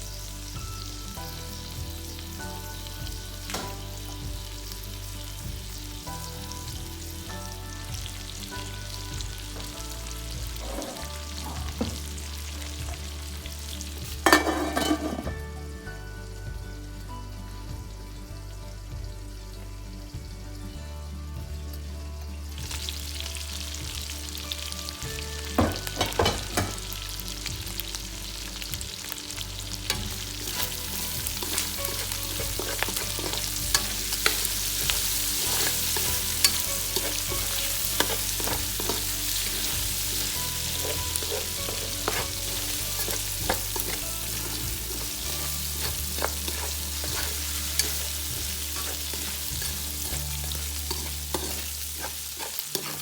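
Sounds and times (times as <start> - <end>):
food sizzling in a pan: 0.0 - 53.0
utensil clicking and scraping pan: 29.9 - 53.0.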